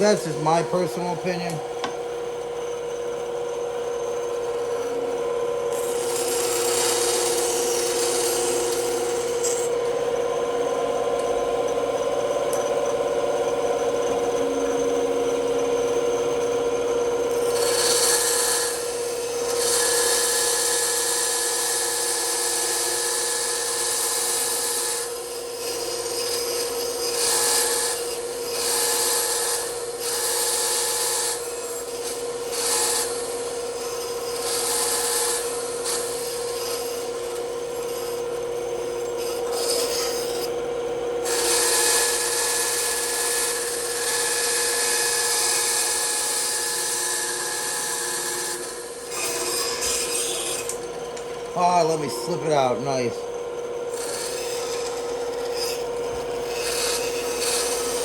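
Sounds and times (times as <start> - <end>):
bandsaw humming: 0.0 - 40.6, 41.2 - 58.0
blade rasping through wood: 5.7 - 9.8, 25.8 - 40.5, 41.2 - 50.8, 53.9 - 58.0.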